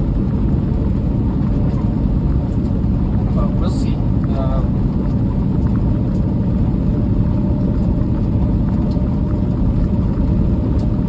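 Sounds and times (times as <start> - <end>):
road noise: 0.0 - 8.0
truck diesel engine rumble: 0.0 - 11.0.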